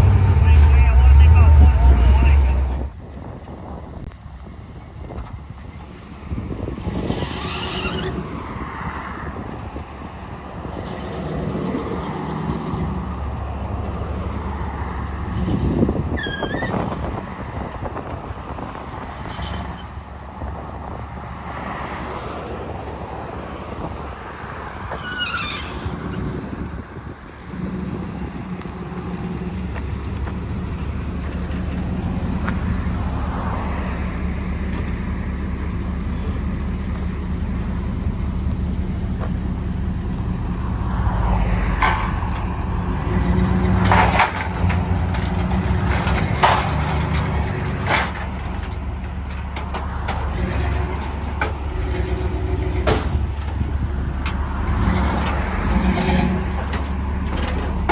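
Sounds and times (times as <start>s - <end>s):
car engines revving: 0.0s - 3.0s, 6.0s - 20.1s, 20.9s - 57.9s
brief high squeals: 24.9s - 26.2s.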